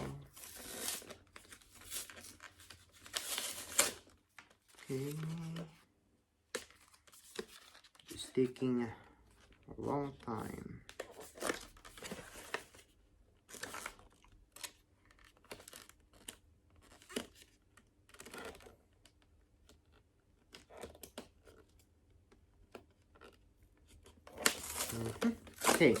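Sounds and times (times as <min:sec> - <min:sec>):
packaging rustling and tearing: 0:00.0 - 0:05.6, 0:24.3 - 0:26.0.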